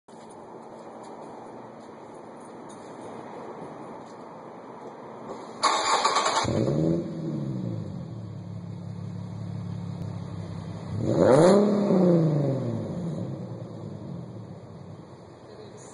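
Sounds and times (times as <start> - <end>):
car engine starting and idling: 5.2 - 15.9.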